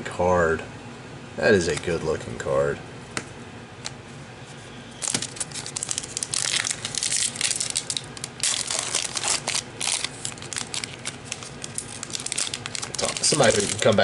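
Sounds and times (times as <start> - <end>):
foil wrapper crinkling: 5.0 - 14.0.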